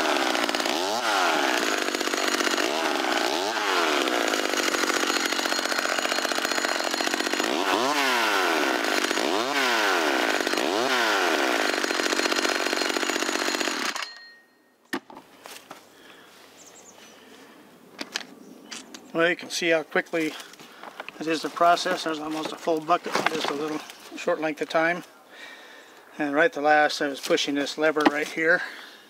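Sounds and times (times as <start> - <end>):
chainsaw revving: 0.0 - 14.0.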